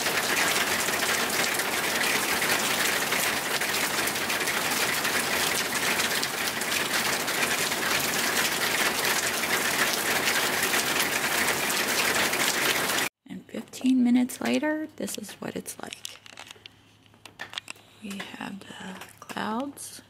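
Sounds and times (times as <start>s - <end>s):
steady rain falling: 0.0s - 13.1s.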